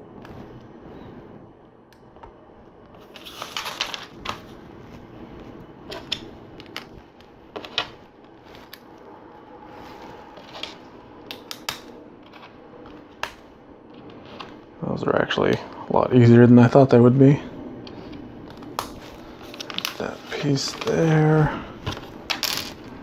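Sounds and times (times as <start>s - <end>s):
rustling of plastic pieces: 3.0s - 5.0s, 18.0s - 23.0s.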